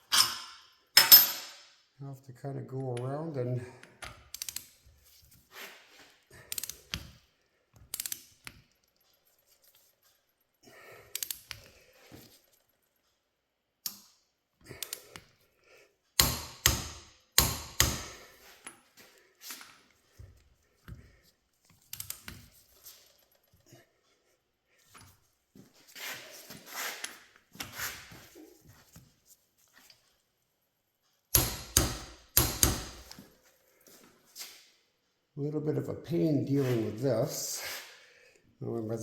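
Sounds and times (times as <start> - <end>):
wrenches clinking on metal parts: 0.0 - 1.7.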